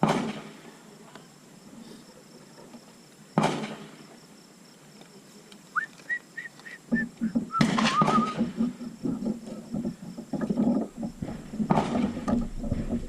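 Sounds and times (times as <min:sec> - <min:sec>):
gunshot: 0:00.0 - 0:00.6, 0:03.4 - 0:04.0, 0:07.6 - 0:08.6.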